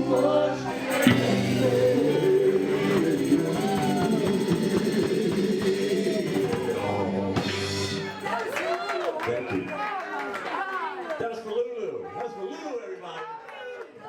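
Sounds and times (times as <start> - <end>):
live band music: 0.0 - 8.4
person singing: 0.0 - 8.4.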